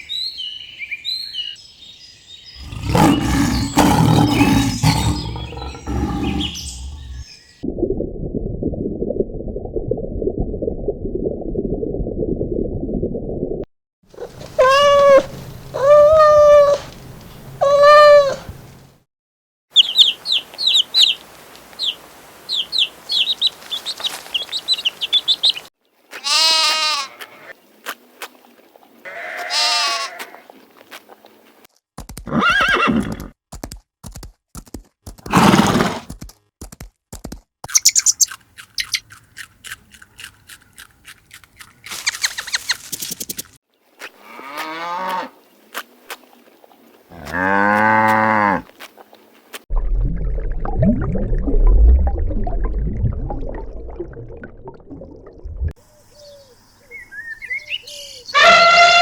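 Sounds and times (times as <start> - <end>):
faint chirps: 2.5 - 7.6
low rumbling growl: 2.6 - 7.3
animal calls: 2.6 - 7.4, 14.2 - 16.9, 17.6 - 18.5, 57.9 - 59.0.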